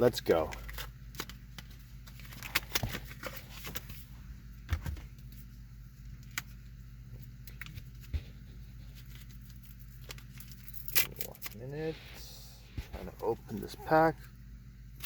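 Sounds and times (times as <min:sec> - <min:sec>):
low car cabin hum: 0:04.2 - 0:15.0
foil wrapper crinkling: 0:08.8 - 0:11.7.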